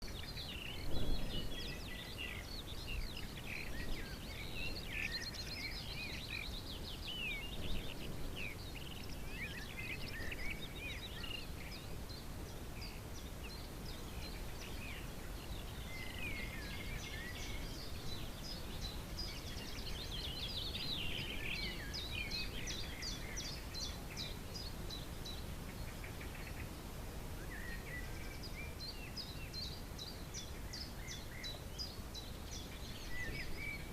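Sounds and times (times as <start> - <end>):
wind rumble: 0.0 - 25.8
songbirds chirping: 0.0 - 33.9.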